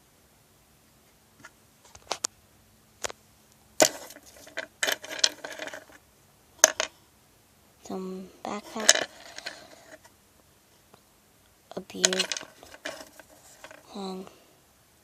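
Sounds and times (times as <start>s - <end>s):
plastic toy bricks clicking: 6.6s - 6.9s, 12.0s - 13.8s.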